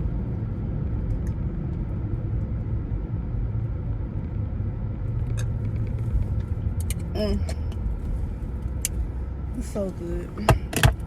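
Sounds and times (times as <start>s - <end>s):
car road and engine noise: 0.0s - 11.0s.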